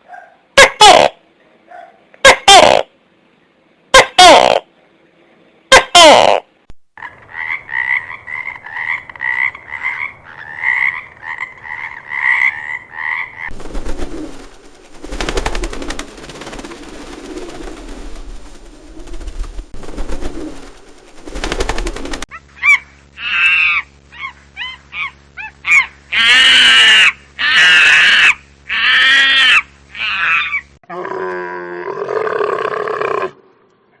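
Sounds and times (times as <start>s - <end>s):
noisy rattling animal call: 0.0s - 2.9s, 7.0s - 30.7s
short croaking calls: 5.9s - 16.7s
high pitch-bending animal calls: 22.4s - 30.7s.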